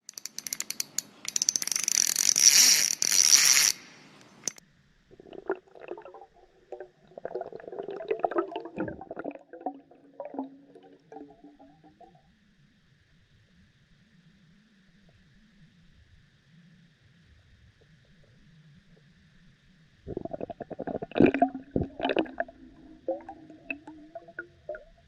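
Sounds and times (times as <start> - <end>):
fizzing rush of bubbles: 5.1 - 12.2, 20.1 - 25.0
low gurgling bubble pops: 5.1 - 12.2, 20.1 - 25.0.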